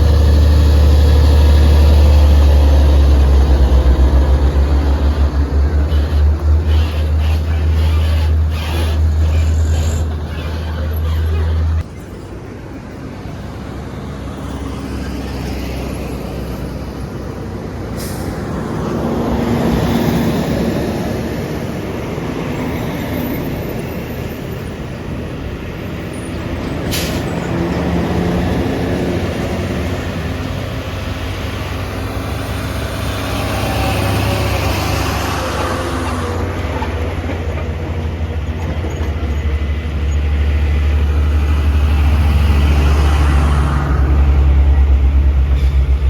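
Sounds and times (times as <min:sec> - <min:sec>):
truck diesel engine labouring: 0:00.0 - 0:12.2, 0:24.4 - 0:46.0.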